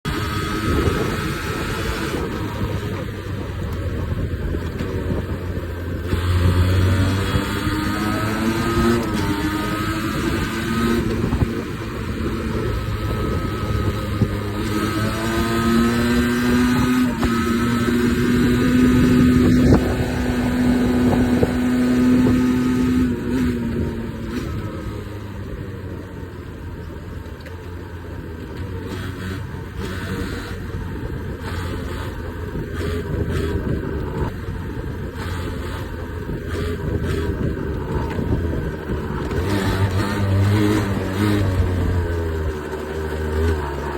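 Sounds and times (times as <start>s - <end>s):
motorcycle engine revving: 0.0s - 43.9s.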